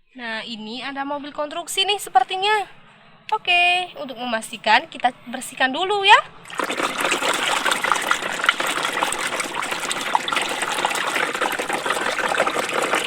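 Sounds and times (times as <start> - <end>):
water gushing and splashing: 6.4 - 13.0.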